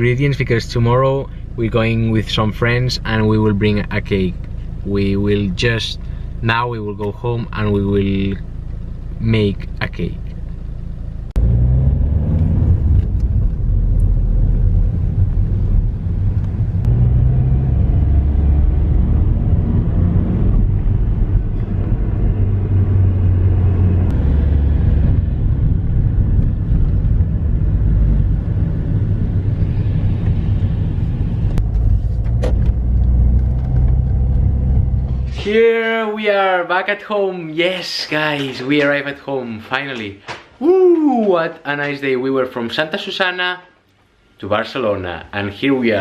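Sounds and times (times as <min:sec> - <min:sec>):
car engine rumble: 0:00.0 - 0:36.0
road noise: 0:00.0 - 0:36.5.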